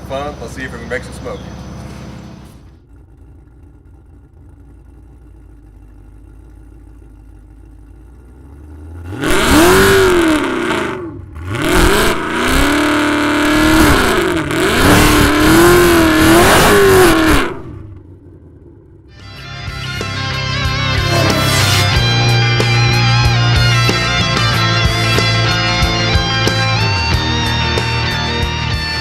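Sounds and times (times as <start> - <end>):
car engine revving hard: 8.8 - 17.9.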